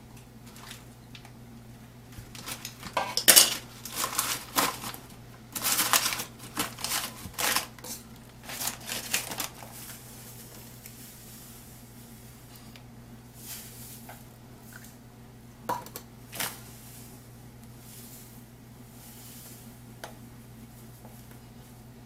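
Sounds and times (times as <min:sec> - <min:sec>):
utensils clattering against a pot: 0:02.4 - 0:04.9.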